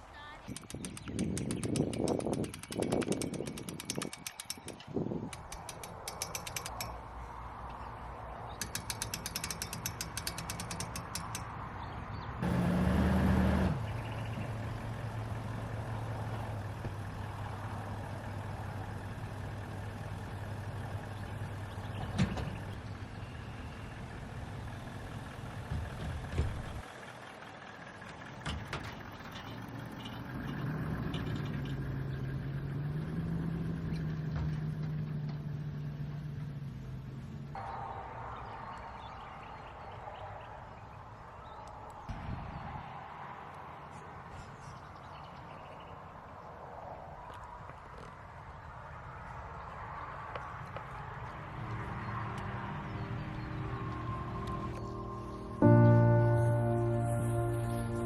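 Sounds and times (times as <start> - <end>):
fast mechanical ratchet clicking: 0.5 - 6.9, 8.6 - 11.5.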